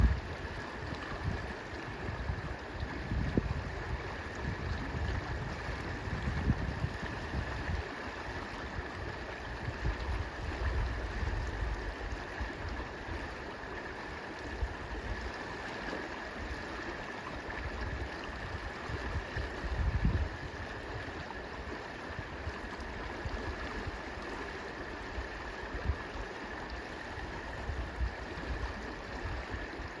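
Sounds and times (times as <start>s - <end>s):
wind rumble on microphone: 0.0s - 13.4s, 17.6s - 21.3s, 25.2s - 26.2s, 26.8s - 29.9s
river flowing: 0.0s - 30.0s.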